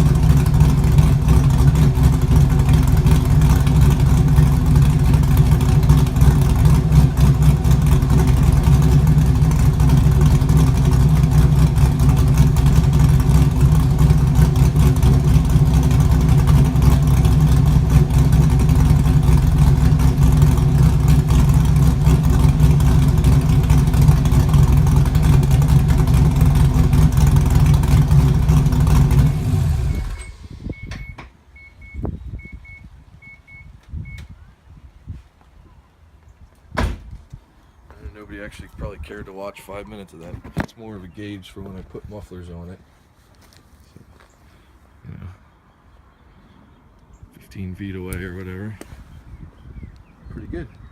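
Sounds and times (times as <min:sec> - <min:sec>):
car engine idling: 0:00.0 - 0:30.7.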